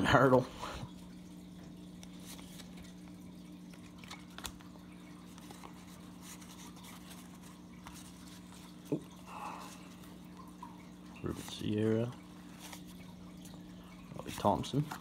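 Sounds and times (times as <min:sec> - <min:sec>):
cards sliding and clicking: 0:02.1 - 0:02.9, 0:03.7 - 0:08.5.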